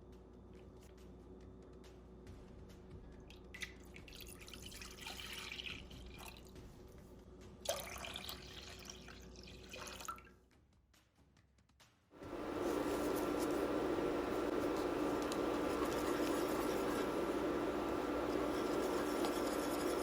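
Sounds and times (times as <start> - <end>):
liquid pouring: 3.5 - 6.5, 7.7 - 10.3
faint steady hum: 12.2 - 20.0.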